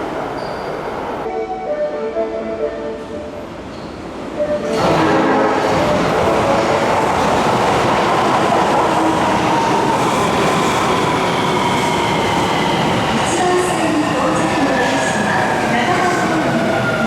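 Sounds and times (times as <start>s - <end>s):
train wheels rumbling on rail: 3.6s - 17.0s.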